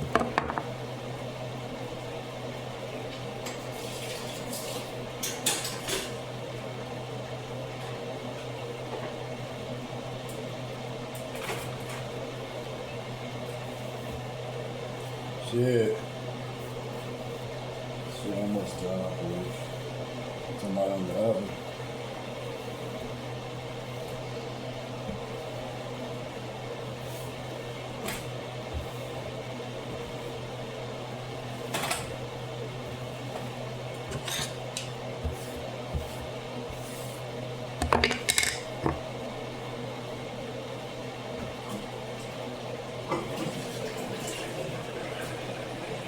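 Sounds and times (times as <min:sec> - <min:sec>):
low appliance hum: 0:00.0 - 0:46.0.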